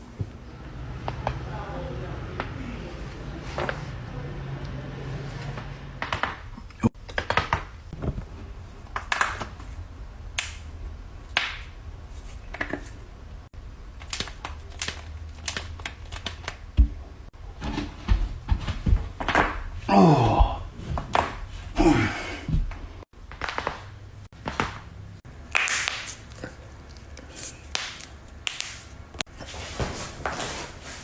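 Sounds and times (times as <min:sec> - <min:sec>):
person groaning: 0:19.9 - 0:20.8, 0:21.8 - 0:22.6.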